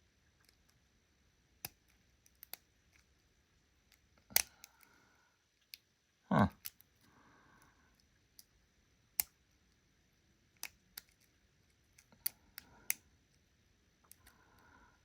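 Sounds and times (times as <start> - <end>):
metallic lock pick clicks: 4.3 - 4.9.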